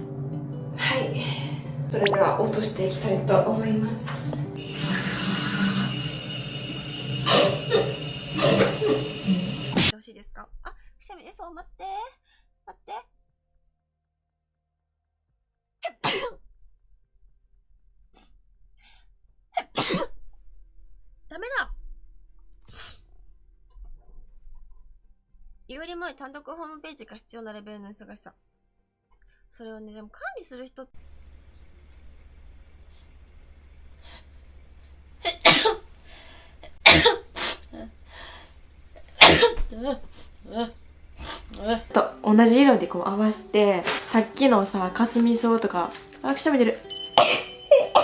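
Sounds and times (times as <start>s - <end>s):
woman sneezing: 7.3s - 9.0s, 15.9s - 16.4s, 19.8s - 20.1s, 36.8s - 37.6s, 39.2s - 39.7s.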